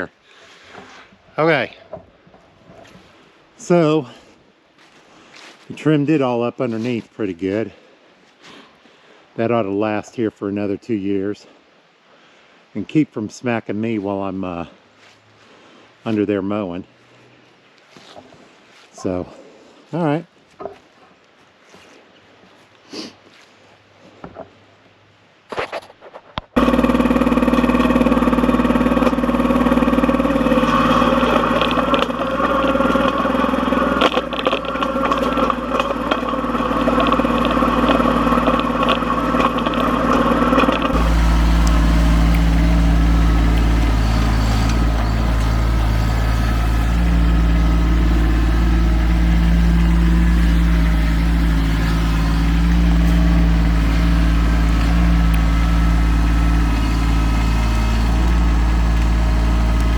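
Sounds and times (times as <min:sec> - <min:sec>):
diesel engine running: 0:26.6 - 0:59.9.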